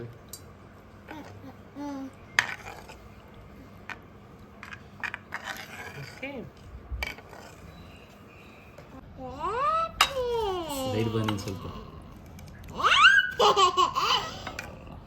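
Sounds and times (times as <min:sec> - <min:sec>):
utensils scraping: 0:04.6 - 0:08.0.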